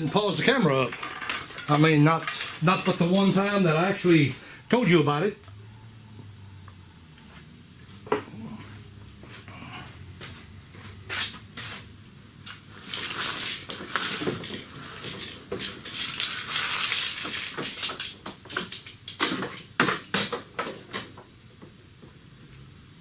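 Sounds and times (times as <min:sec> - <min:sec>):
metal tools clinking and scraping: 0:00.0 - 0:03.7.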